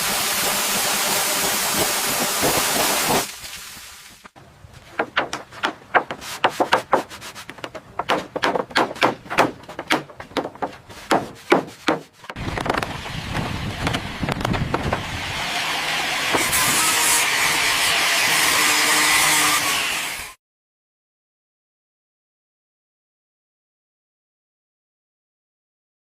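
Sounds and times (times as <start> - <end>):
sharp knocks and strikes: 4.9 - 15.0.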